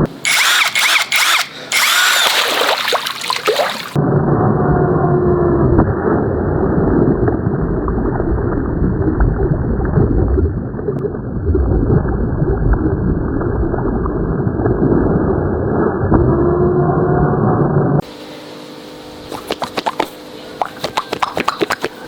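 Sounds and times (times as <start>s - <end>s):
water rushing and gurgling: 2.0s - 4.0s.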